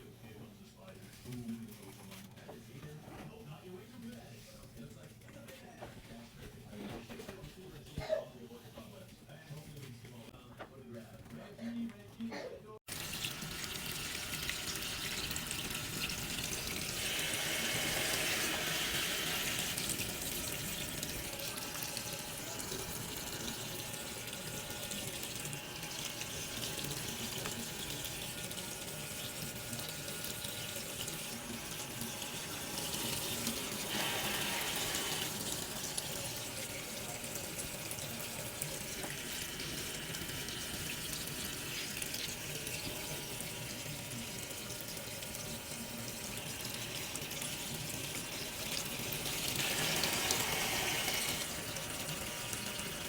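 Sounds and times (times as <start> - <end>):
water running from tap: 12.9 - 53.0.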